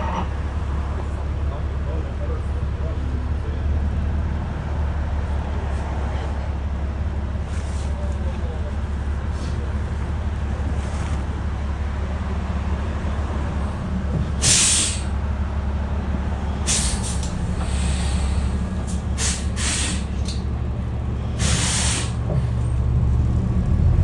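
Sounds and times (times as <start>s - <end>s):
bus engine idling: 0.0s - 24.0s
compressed-air hisses: 14.4s - 15.1s, 16.7s - 18.6s, 19.2s - 20.1s, 21.4s - 22.2s.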